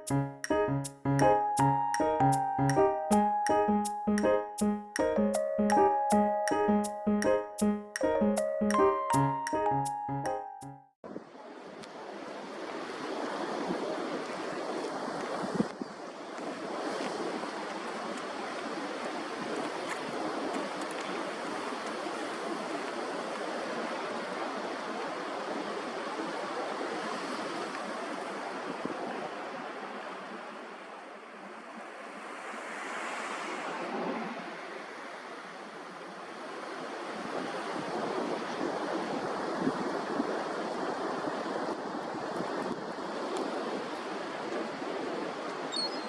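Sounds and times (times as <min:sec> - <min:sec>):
wind: 0:11.0 - 0:46.0
waves washing: 0:30.0 - 0:45.7.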